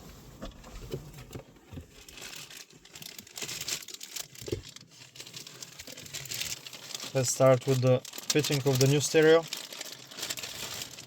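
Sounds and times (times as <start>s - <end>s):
plastic wrapping crinkling: 1.4s - 11.0s.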